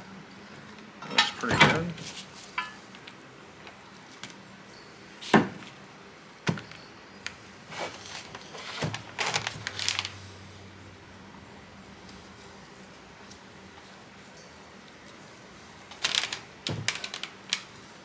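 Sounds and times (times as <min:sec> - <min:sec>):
tools handled on a workbench: 0:00.8 - 0:03.1
clatter of parts: 0:01.0 - 0:03.1, 0:15.9 - 0:17.7.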